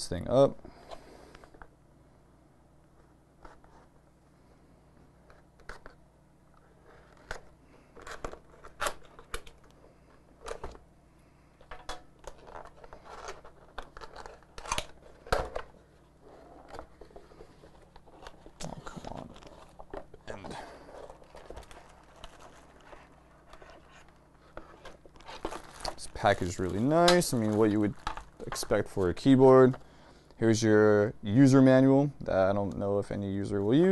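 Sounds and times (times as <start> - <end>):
packaging rustling: 12.1 - 29.8.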